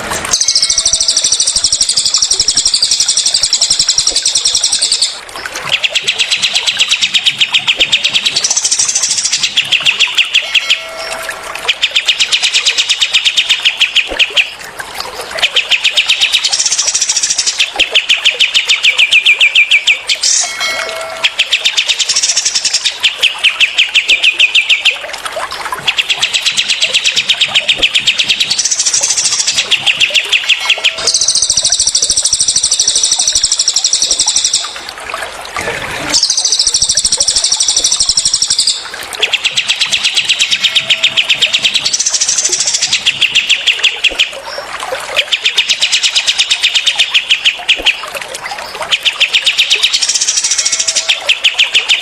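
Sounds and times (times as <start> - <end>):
running water babbling: 0.0 - 52.0
songbirds trilling: 0.3 - 34.8, 36.0 - 52.0.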